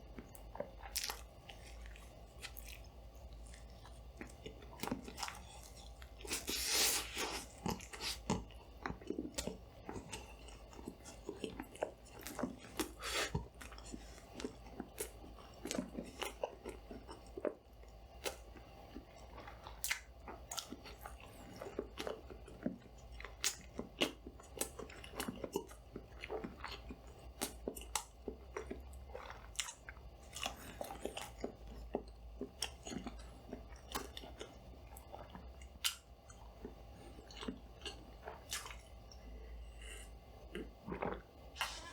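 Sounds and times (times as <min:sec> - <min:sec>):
chewing and crunching food: 0:00.0 - 0:41.9
steady low hum: 0:00.0 - 0:41.9
wet mouth clicks: 0:41.0 - 0:41.9.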